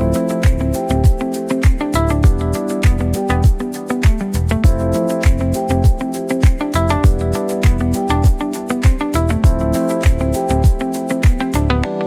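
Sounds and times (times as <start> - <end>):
deep kick drum: 0.0 - 11.5
plucked melody music: 0.0 - 12.0.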